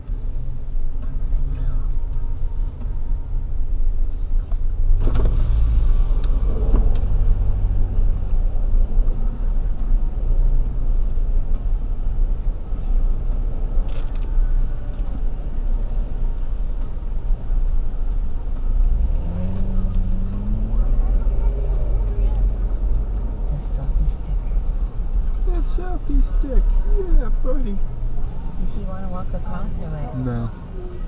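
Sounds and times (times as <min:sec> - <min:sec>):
car engine and road noise: 0:00.0 - 0:31.0.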